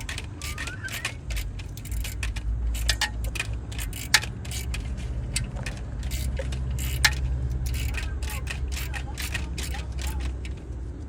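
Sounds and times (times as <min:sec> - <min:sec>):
metallic tool clicks: 0:00.0 - 0:10.7.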